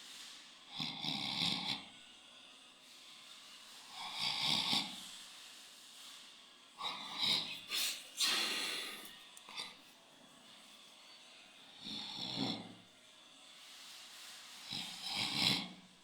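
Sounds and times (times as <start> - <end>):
person snoring: 0.7 - 1.9, 3.8 - 5.2, 6.8 - 9.6, 11.7 - 12.8, 14.6 - 15.9.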